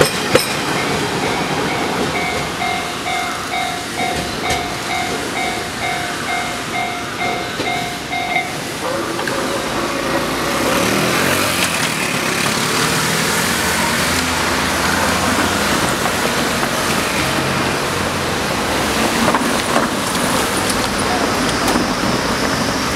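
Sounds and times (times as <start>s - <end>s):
level-crossing alarm bell ringing: 0.0s - 9.0s
vehicle engines pulling away: 8.9s - 19.6s.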